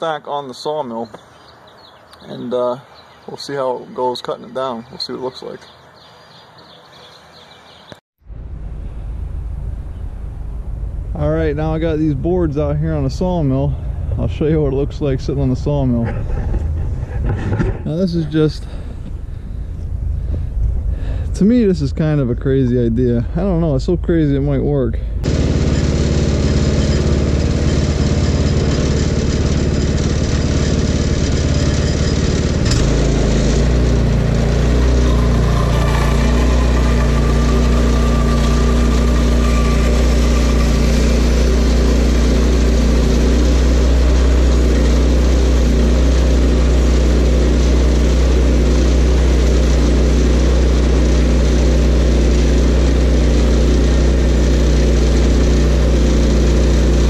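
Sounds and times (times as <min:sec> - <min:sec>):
gas engine running: 0:08.4 - 0:21.4, 0:25.0 - 0:57.0.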